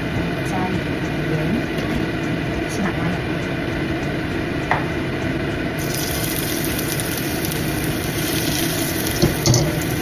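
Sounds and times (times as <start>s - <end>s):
pot of water heating rushing: 5.8s - 10.0s.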